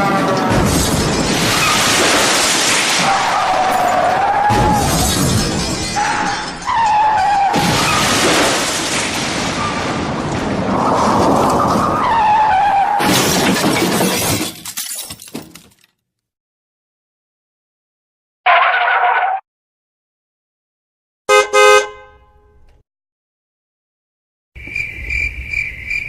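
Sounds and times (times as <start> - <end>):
crashing and shattering: 0.0 - 15.9.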